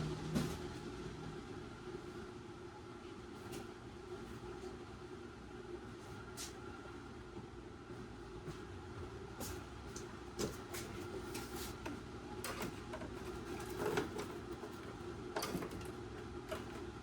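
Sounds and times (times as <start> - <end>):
clicks rattles and knocks of handling: 12.4 - 17.0.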